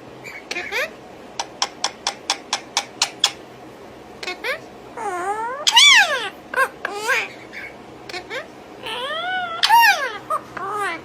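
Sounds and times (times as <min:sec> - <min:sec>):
parrots chirping: 0:00.2 - 0:03.4, 0:04.2 - 0:11.0
rising parrot call: 0:08.8 - 0:11.0.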